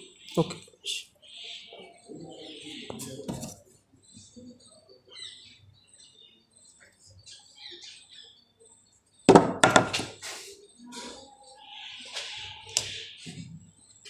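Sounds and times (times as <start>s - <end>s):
faint bird chirps: 0.0s - 14.0s
clatter of sharp knocks: 9.3s - 10.2s.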